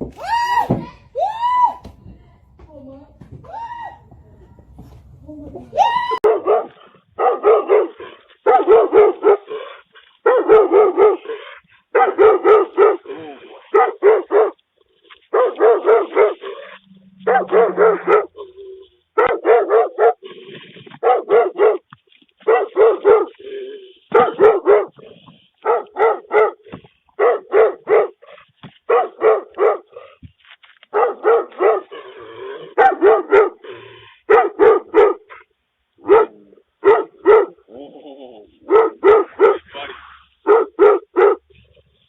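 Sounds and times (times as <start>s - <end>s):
dog barking: 6.2s - 9.6s, 10.2s - 14.6s, 15.3s - 16.6s, 17.2s - 18.4s, 19.2s - 20.3s, 21.0s - 23.4s, 24.1s - 25.0s, 25.6s - 26.6s, 27.2s - 28.2s, 28.9s - 29.9s, 30.9s - 32.0s, 32.7s - 33.6s, 34.3s - 37.6s, 38.7s - 39.8s, 40.4s - 41.4s.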